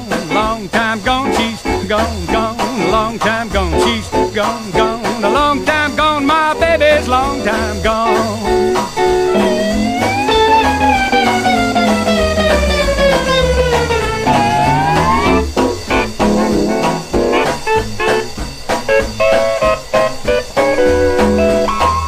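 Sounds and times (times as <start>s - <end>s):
quick picked guitar notes: 0.0s - 22.0s
bass line: 1.2s - 18.0s
guitar note bending down: 1.2s - 22.0s.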